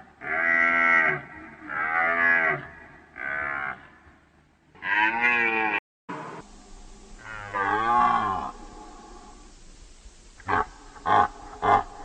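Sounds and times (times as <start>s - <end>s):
deer bellowing calls: 0.2s - 4.0s, 4.8s - 5.8s, 7.2s - 9.6s, 10.4s - 12.0s.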